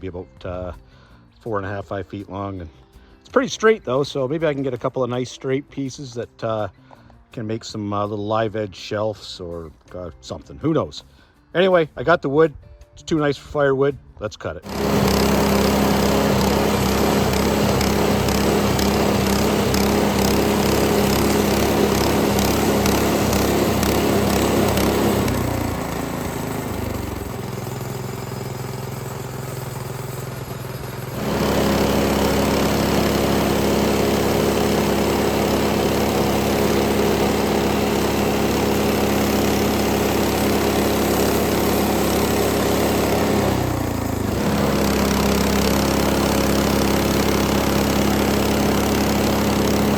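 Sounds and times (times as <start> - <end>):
sawmill engine running: 14.6 - 49.9.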